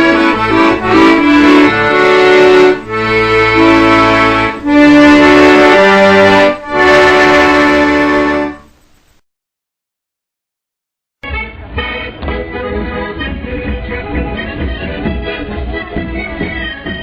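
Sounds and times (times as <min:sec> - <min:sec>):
instrumental music with sustained chords: 0:00.0 - 0:08.6.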